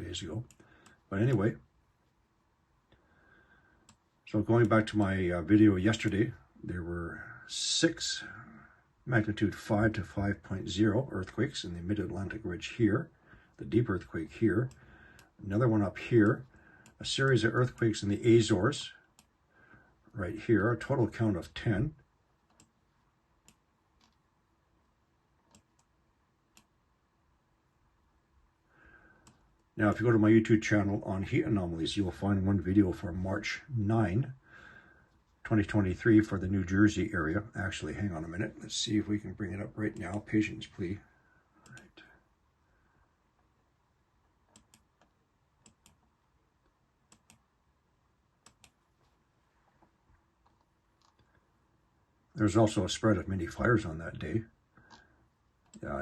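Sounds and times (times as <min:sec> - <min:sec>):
computer mouse clicks: 0:03.8 - 0:04.8, 0:23.4 - 0:24.2, 0:25.4 - 0:25.9, 0:26.5 - 0:26.7, 0:29.2 - 0:29.7, 0:41.6 - 0:42.0, 0:44.5 - 0:46.1, 0:47.1 - 0:47.4, 0:48.4 - 0:48.8, 0:50.4 - 0:51.4, 0:54.8 - 0:55.9.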